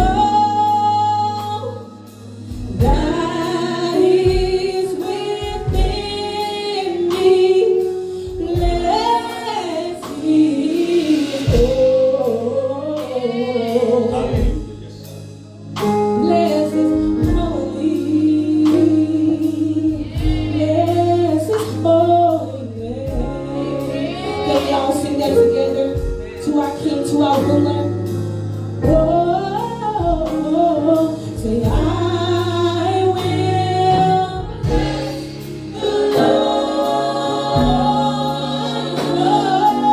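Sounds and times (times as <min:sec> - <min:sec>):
bass notes: 0:00.0 - 0:39.9
choir singing gospel: 0:00.0 - 0:39.9
drum hits: 0:02.5 - 0:03.6, 0:04.3 - 0:06.3, 0:11.1 - 0:12.0, 0:34.4 - 0:39.9.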